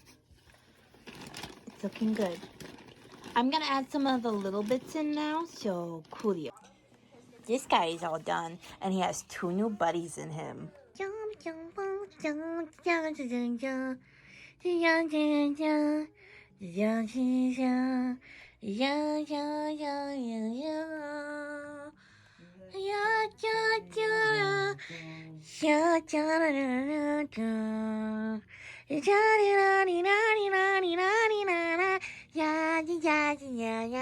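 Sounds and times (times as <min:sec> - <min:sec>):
high childlike wordless singing: 0:10.9 - 0:14.0, 0:22.7 - 0:34.0.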